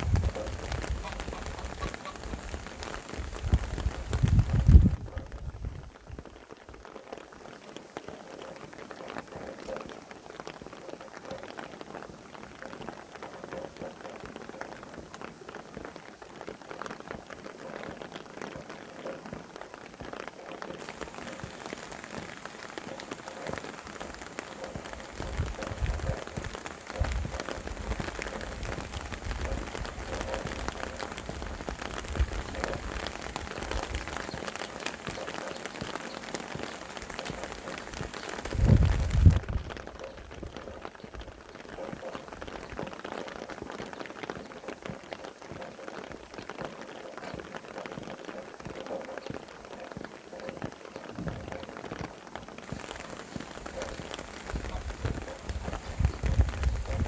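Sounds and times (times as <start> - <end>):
low wind gusts: 0.0 - 6.8, 20.2 - 43.7, 48.4 - 57.0
rain pattering: 0.0 - 57.0.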